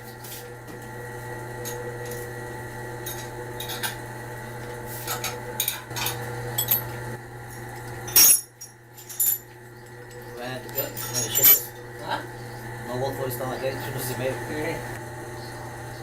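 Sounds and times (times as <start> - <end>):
lathe machine hum: 0.0 - 16.0
metallic clinks and rattles: 10.8 - 11.7.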